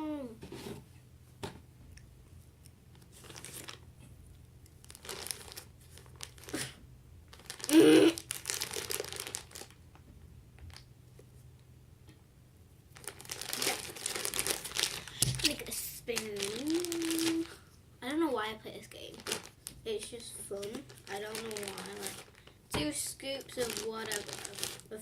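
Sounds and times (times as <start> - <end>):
plastic bag crinkling: 3.0 - 3.8, 4.8 - 9.9, 10.6 - 10.8, 12.9 - 17.6, 18.8 - 25.0.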